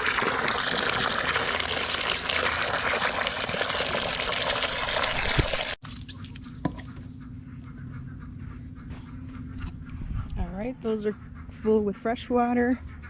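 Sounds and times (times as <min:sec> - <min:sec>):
water from hose splashing into container: 0:00.0 - 0:06.5.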